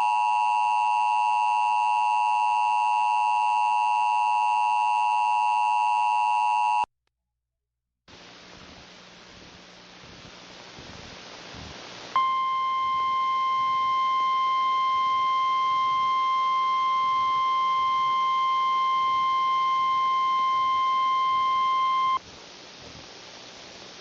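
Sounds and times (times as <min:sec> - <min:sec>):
emergency alert tone: 0:00.0 - 0:06.9, 0:12.2 - 0:22.2
static hiss: 0:08.1 - 0:14.1, 0:17.0 - 0:24.0.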